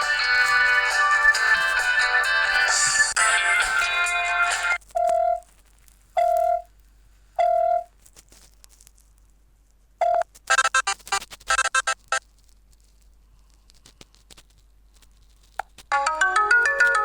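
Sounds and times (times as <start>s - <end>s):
musical phone ringtone: 0.0s - 4.8s, 15.9s - 17.0s
alert tone beeps: 10.5s - 12.2s
quick short beeps: 10.5s - 12.2s.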